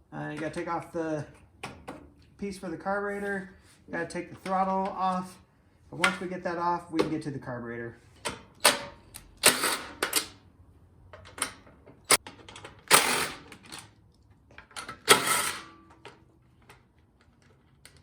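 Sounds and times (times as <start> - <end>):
tools and metal parts clattering: 14.6 - 16.8.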